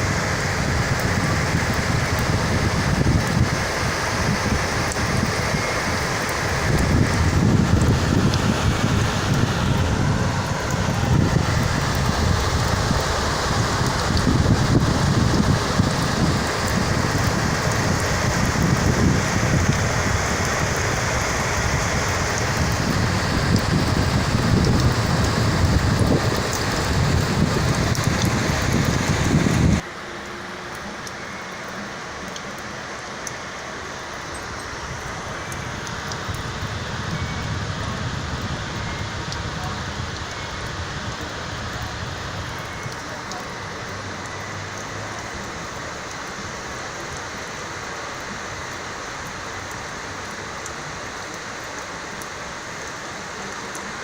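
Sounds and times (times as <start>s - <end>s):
wind rumble on microphone: 0.0s - 29.8s, 34.6s - 43.4s
heavy rain downpour: 0.0s - 54.0s.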